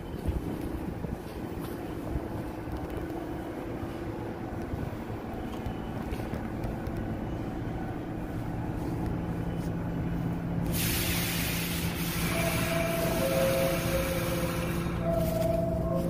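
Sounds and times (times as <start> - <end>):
subway train rumbling: 0.0 - 16.0
train air hiss: 10.6 - 15.4.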